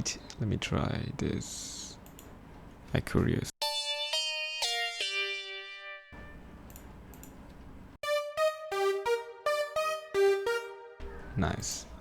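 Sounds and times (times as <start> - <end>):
synthesizer lead notes: 8.0 - 11.7.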